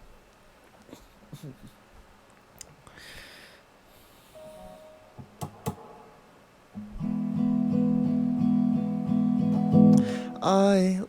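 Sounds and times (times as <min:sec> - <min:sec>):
acoustic guitar strumming: 0:04.4 - 0:10.9.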